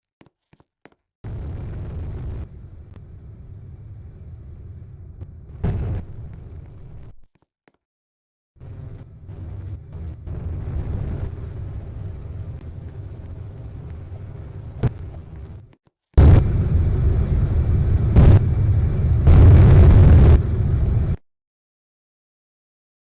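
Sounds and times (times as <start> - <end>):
machine motor rumbling: 8.6 - 21.2.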